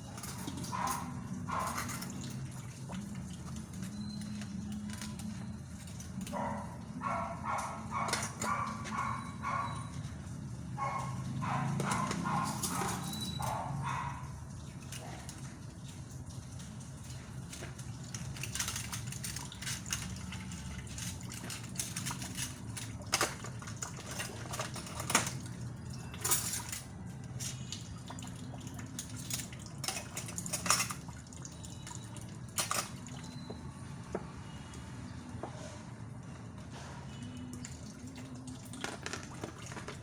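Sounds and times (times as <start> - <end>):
water splashing at a sink: 0.0 - 34.3, 37.0 - 40.0
dishes clinking: 11.8 - 13.7, 28.9 - 31.1, 32.5 - 34.2.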